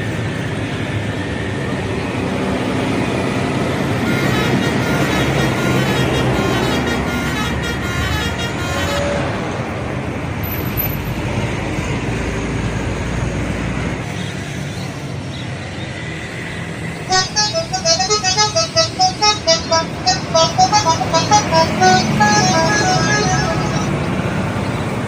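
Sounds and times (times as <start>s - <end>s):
heavy engine rumble: 0.0s - 25.0s
road noise: 0.0s - 25.0s
bus horn tooting notes: 3.8s - 9.8s, 17.1s - 25.0s.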